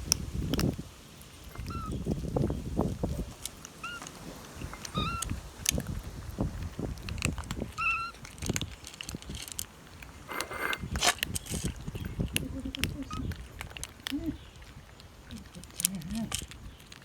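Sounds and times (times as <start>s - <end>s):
kitten mewing: 4.9s - 5.3s.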